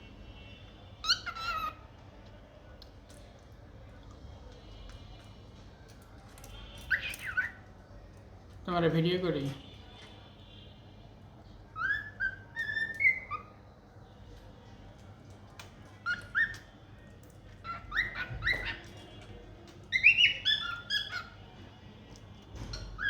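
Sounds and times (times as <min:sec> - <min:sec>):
cockatiel chirping: 0:01.0 - 0:01.8, 0:06.8 - 0:07.6, 0:11.8 - 0:13.6, 0:16.0 - 0:16.7, 0:17.6 - 0:19.0, 0:19.9 - 0:21.4.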